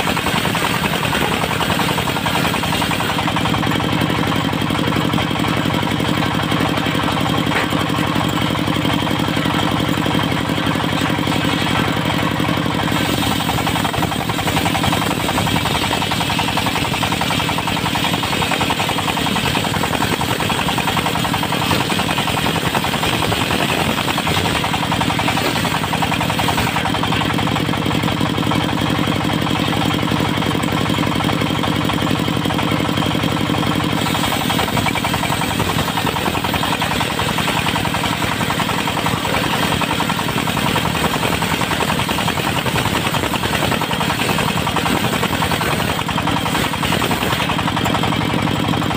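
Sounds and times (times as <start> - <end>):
saw blade cutting wood: 0.0 - 27.7, 33.8 - 48.9
sawmill engine running: 0.0 - 48.9.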